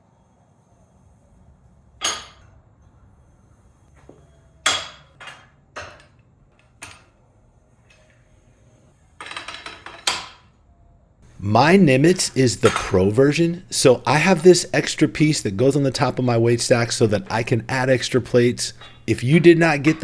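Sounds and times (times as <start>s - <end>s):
weight plates clanking: 11.3s - 20.0s.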